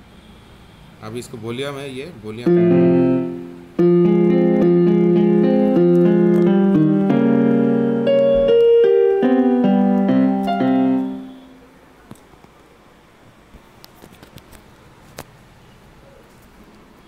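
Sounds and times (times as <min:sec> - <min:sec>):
keyboard piano melody over chords: 0:02.4 - 0:11.8.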